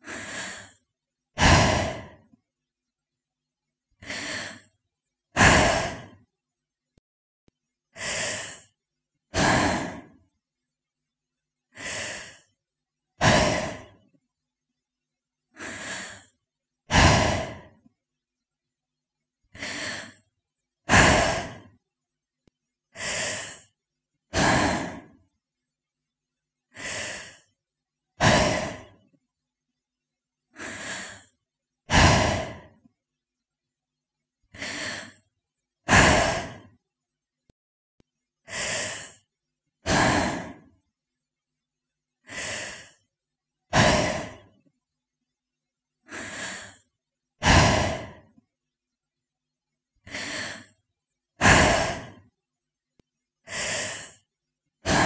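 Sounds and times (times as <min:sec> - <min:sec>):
woman breathing deeply: 0:00.0 - 0:00.8, 0:01.4 - 0:02.3, 0:04.0 - 0:04.7, 0:05.4 - 0:06.2, 0:07.9 - 0:10.2, 0:11.7 - 0:12.5, 0:13.2 - 0:14.0, 0:15.5 - 0:17.8, 0:19.5 - 0:20.2, 0:20.9 - 0:21.7, 0:22.9 - 0:23.7, 0:24.3 - 0:25.2, 0:26.7 - 0:27.5, 0:28.2 - 0:29.0, 0:30.5 - 0:32.8, 0:34.5 - 0:35.2, 0:35.9 - 0:36.7, 0:38.4 - 0:39.2, 0:39.8 - 0:40.7, 0:42.2 - 0:43.0, 0:43.7 - 0:44.5, 0:46.0 - 0:48.4, 0:50.0 - 0:50.7, 0:51.4 - 0:52.2, 0:53.4 - 0:54.2.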